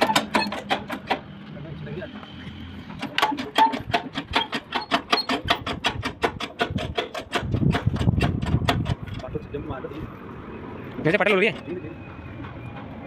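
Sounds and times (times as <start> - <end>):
truck differential clicking: 0.0 - 1.3, 3.0 - 9.5.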